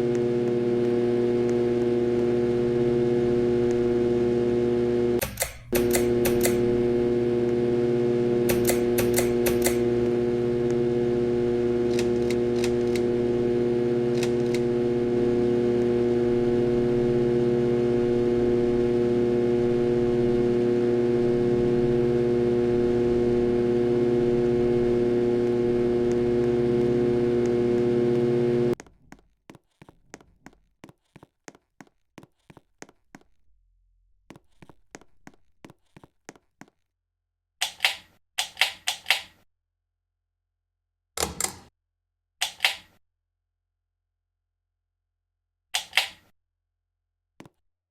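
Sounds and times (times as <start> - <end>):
ceiling fan motor humming: 0.0 - 5.2, 5.8 - 28.8
clicks: 0.0 - 28.8, 45.8 - 46.3.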